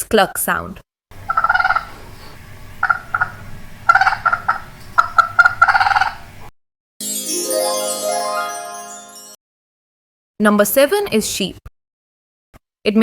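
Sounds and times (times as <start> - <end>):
short rising chime: 7.0 - 9.4.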